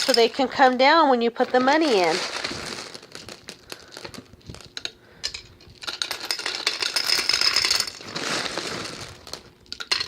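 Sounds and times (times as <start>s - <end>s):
gumballs rattling into glass globe: 0.0s - 0.8s, 5.8s - 10.0s.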